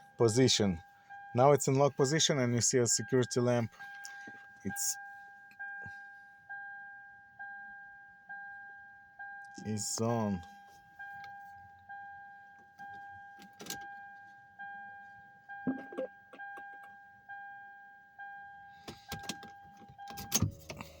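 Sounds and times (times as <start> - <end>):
electronic chime dinging: 15.6 - 16.9.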